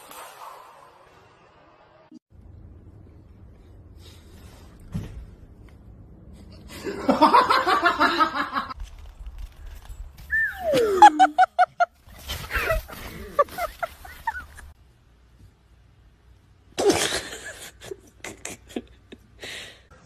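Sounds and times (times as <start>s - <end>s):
person laughing: 10.7s - 11.9s, 12.5s - 14.7s.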